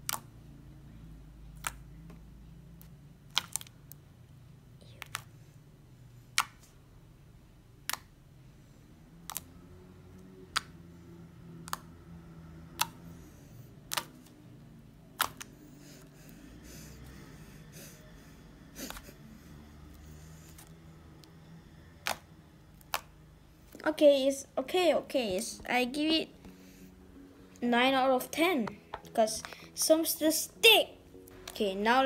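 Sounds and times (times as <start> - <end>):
slime clicks and pops: 3.3 - 3.7, 15.2 - 15.5, 22.0 - 22.2.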